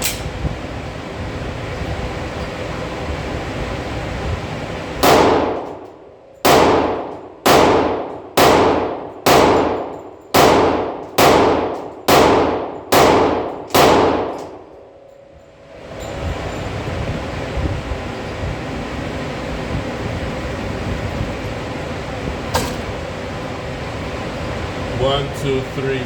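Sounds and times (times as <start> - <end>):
steady background hum: 0.0 - 26.0
pistol shots with echo: 5.0 - 5.8, 6.4 - 14.6.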